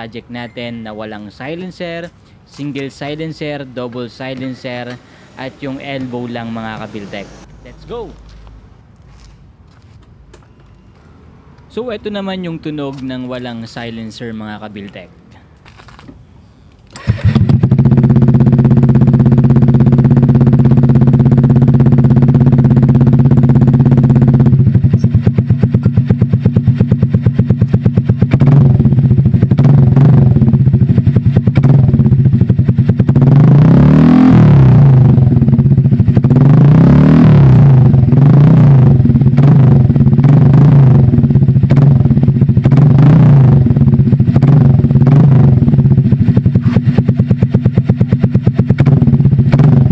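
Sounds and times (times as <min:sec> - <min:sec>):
scooter engine idling and revving: 0:17.0 - 0:49.9.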